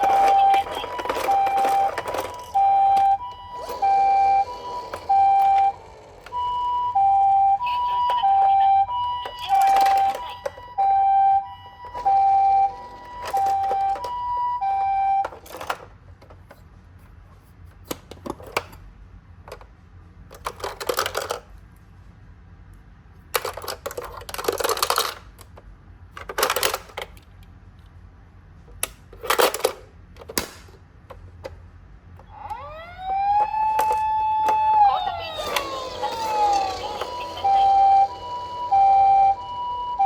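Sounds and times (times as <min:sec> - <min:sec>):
toy cars rattling down cardboard: 0:00.0 - 0:02.9, 0:33.4 - 0:38.8
two-tone ambulance siren: 0:00.0 - 0:15.7, 0:32.2 - 0:40.0.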